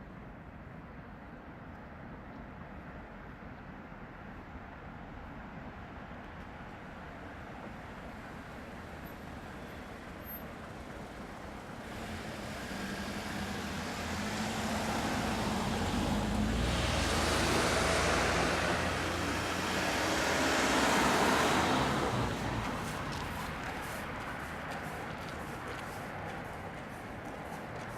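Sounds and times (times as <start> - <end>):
vehicle passing by: 11.8 - 27.9.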